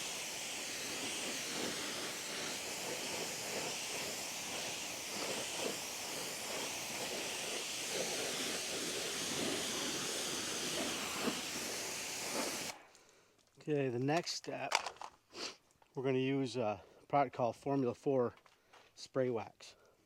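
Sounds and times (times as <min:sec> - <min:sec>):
water spray hissing: 0:00.0 - 0:12.8.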